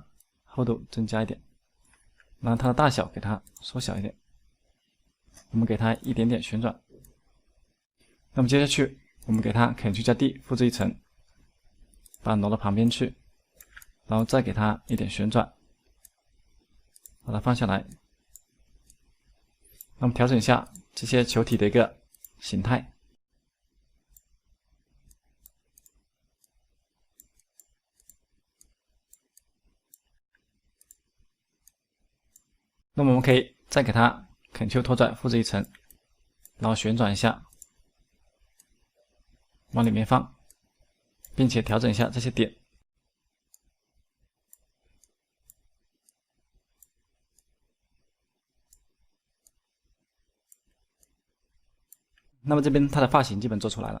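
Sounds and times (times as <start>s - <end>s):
computer mouse clicks: 3.4s - 4.1s, 5.3s - 6.3s, 6.9s - 7.3s, 9.0s - 22.5s, 24.1s - 24.3s, 25.0s - 30.2s, 30.8s - 32.6s, 35.3s - 36.7s, 37.4s - 38.8s, 39.4s - 42.2s, 44.5s - 47.6s, 48.6s - 49.8s, 50.4s - 51.2s, 51.8s - 52.3s.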